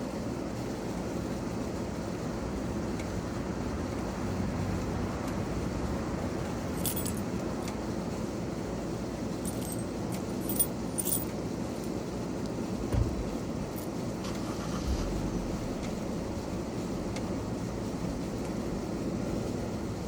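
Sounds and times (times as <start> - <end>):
light metallic jingles and clicks: 6.8 - 7.8, 9.4 - 12.0
steady low rumble: 14.7 - 18.8.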